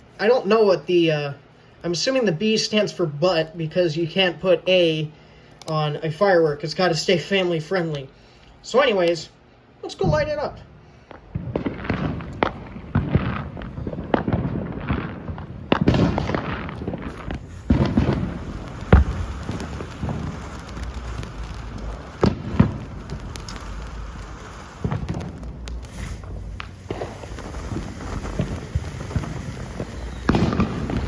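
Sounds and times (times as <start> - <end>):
firework fountain hissing: 9.8 - 31.0
sharp crackling pops: 9.9 - 31.0.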